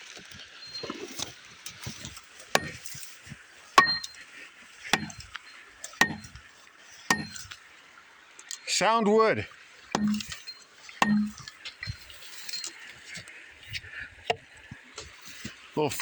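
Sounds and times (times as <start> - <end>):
steel tool striking frozen wood: 2.5 - 3.2, 3.8 - 4.2, 4.9 - 6.4, 7.1 - 7.6, 10.0 - 12.7.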